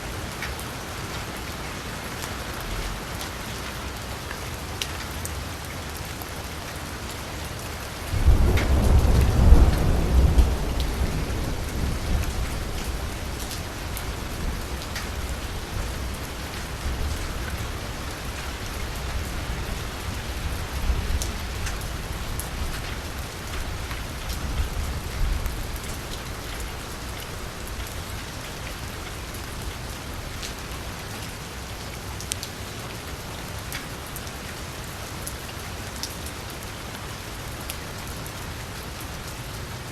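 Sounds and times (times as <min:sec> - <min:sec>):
steady rain on a street: 0:00.0 - 0:39.9
thunder rumbling: 0:08.1 - 0:27.8.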